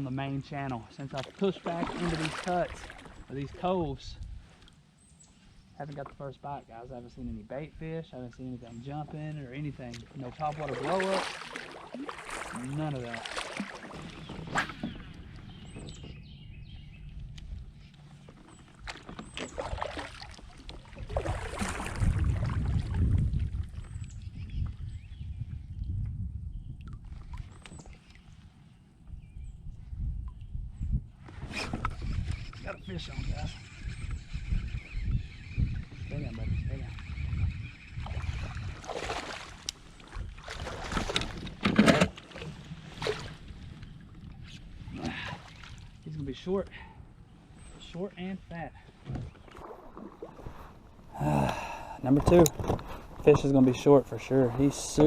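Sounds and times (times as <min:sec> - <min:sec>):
water noise: 0:00.0 - 0:25.0, 0:26.6 - 0:29.2, 0:30.1 - 0:55.0
kayak splashes and knocks: 0:01.0 - 0:03.6, 0:09.8 - 0:16.4, 0:17.1 - 0:24.0, 0:38.0 - 0:46.0, 0:48.8 - 0:51.1
wind on microphone: 0:03.2 - 0:04.6, 0:20.5 - 0:41.7.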